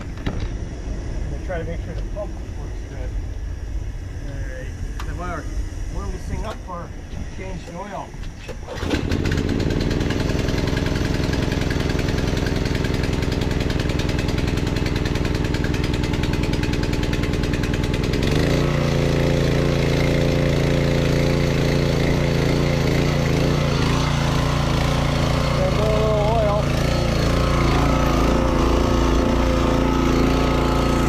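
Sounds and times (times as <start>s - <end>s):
small gas engine running: 8.4s - 31.0s.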